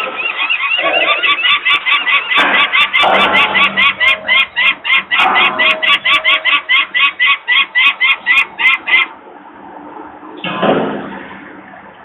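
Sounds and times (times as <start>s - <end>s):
falcon alarm call: 0.0s - 9.1s.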